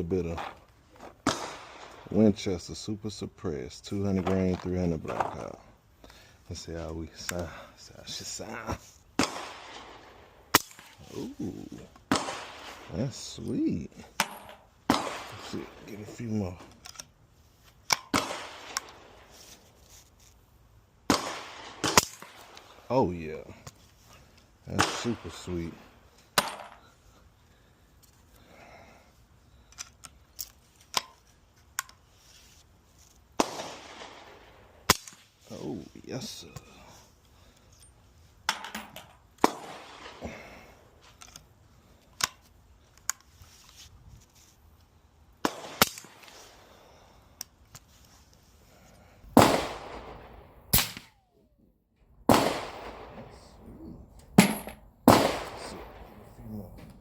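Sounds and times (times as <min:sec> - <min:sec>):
suppressed rifle shots: 0:01.2 - 0:02.0, 0:09.2 - 0:10.9, 0:12.1 - 0:12.9, 0:18.1 - 0:19.0, 0:21.1 - 0:22.6, 0:33.4 - 0:34.3, 0:39.4 - 0:40.3, 0:49.3 - 0:51.4, 0:52.1 - 0:57.0.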